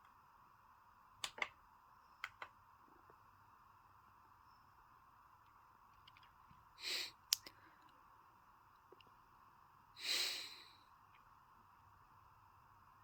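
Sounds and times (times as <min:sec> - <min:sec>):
faint steady hiss: 0:00.0 - 0:13.0.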